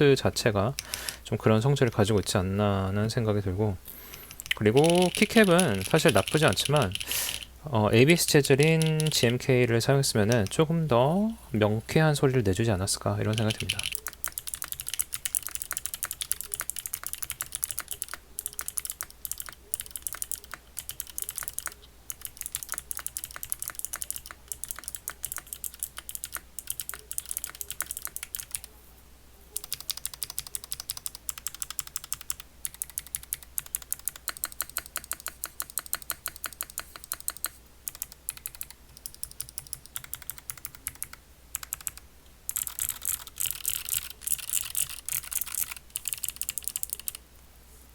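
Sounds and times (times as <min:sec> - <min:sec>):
mechanical keyboard typing: 0:04.1 - 0:07.5, 0:08.6 - 0:09.4, 0:13.2 - 0:28.7, 0:29.6 - 0:47.2.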